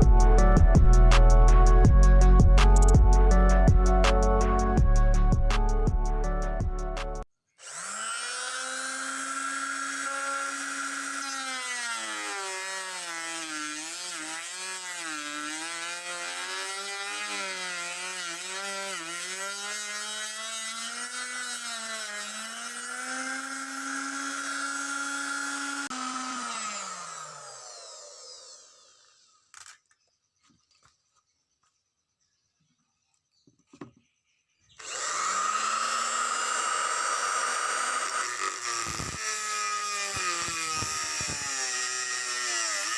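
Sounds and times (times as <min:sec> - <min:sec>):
circular saw motor whining: 0:07.6 - 0:29.9, 0:34.8 - 0:42.9.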